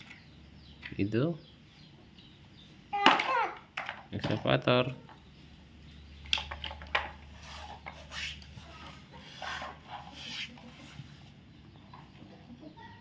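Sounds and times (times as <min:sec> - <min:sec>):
toy vehicles clicking and knocking: 0:00.0 - 0:01.0, 0:03.0 - 0:05.2, 0:06.2 - 0:08.0.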